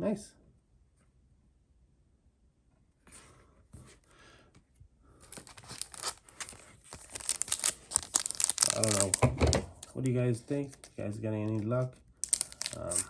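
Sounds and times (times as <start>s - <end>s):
foil wrapper tearing and crinkling: 5.2s - 9.6s, 12.2s - 13.0s.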